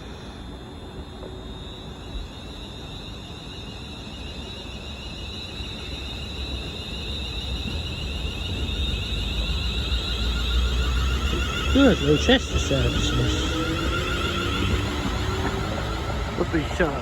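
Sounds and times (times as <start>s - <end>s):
electric train whine: 0.0s - 17.0s
train rumble: 6.5s - 17.0s.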